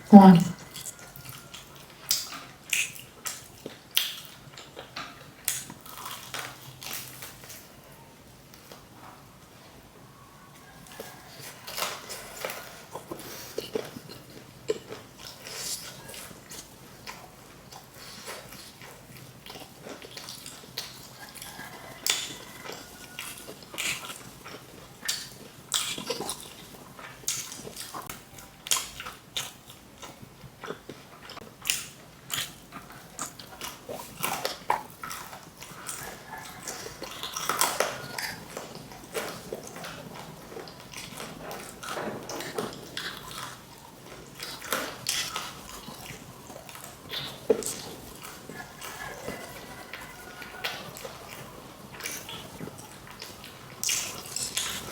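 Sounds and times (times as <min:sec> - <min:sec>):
wet chewing and smacking: 0:00.0 - 0:54.9
crunchy bites of fried chicken: 0:00.5 - 0:07.8, 0:10.7 - 0:54.9.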